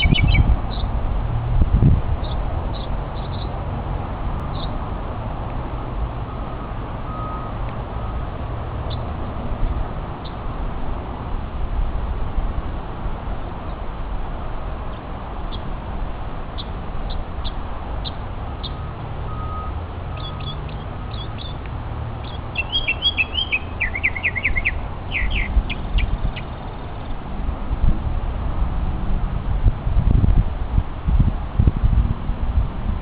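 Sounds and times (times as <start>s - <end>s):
mockingbird singing: 0.0s - 0.9s, 2.2s - 3.5s, 20.2s - 21.6s, 22.2s - 27.0s.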